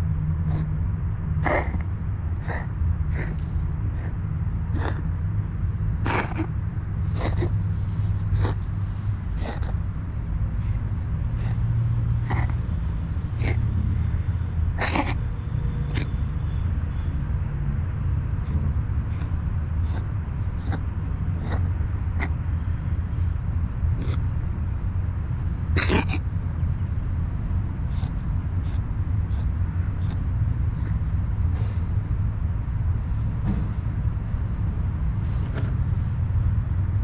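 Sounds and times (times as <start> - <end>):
cat coughing: 1.4 - 5.2, 6.0 - 9.8, 11.4 - 11.6, 12.2 - 12.6, 13.3 - 13.6, 14.7 - 15.2, 15.8 - 16.2, 19.1 - 20.0, 20.6 - 20.8, 21.4 - 22.4, 24.0 - 24.2, 25.7 - 26.3.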